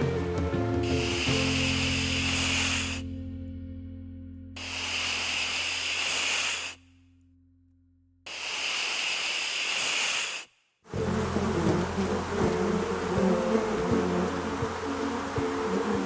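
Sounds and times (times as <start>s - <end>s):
long hisses: 4.6s - 6.8s, 8.3s - 16.0s.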